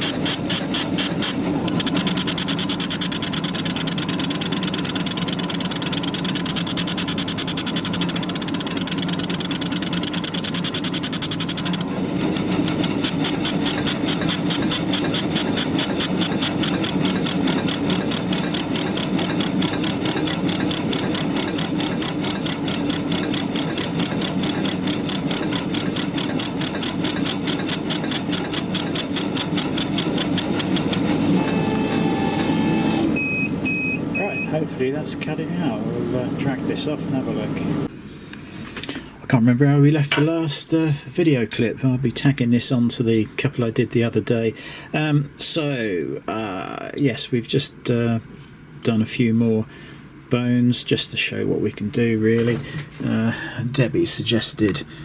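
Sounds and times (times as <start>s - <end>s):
fast pulsing of cutter head: 0.0s - 31.2s
laser cutter hum: 0.0s - 37.9s.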